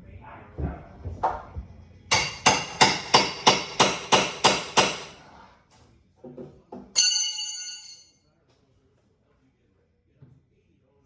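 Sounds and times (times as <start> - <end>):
hammer striking metal: 2.1 - 5.2.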